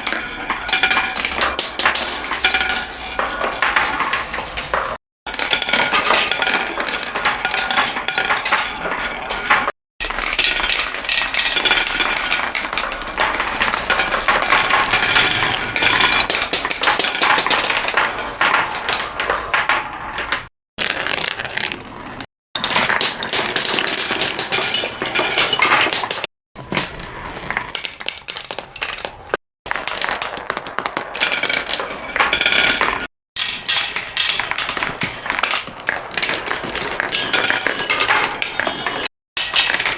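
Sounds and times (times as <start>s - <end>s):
marbles rolling and clattering: 0.0s - 39.9s.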